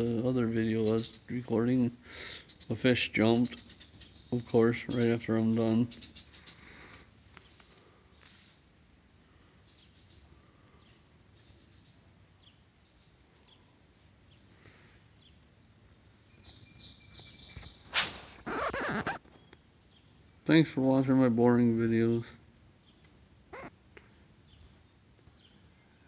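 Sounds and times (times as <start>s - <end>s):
steady background hiss: 0.0s - 26.0s
faint bird chirps: 0.7s - 20.3s, 22.8s - 26.0s
loud rustle: 17.9s - 19.4s.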